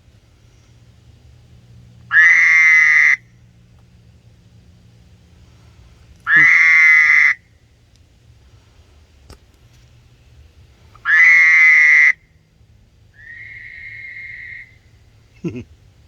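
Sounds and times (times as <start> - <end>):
frog calling loudly: 2.1 - 3.2, 6.3 - 7.4, 11.0 - 12.2, 13.2 - 14.8.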